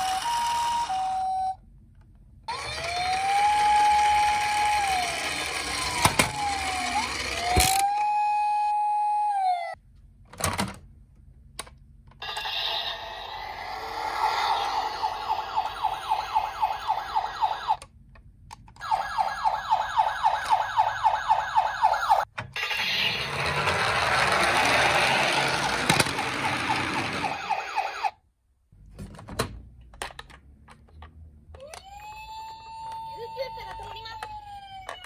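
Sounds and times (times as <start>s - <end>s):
toy siren yelping: 0.0s - 1.6s, 2.5s - 9.8s, 12.2s - 17.8s, 18.8s - 28.2s, 31.6s - 35.0s
noisy whirring: 0.0s - 9.2s, 22.6s - 28.0s
steady electronic tone: 12.2s - 16.2s.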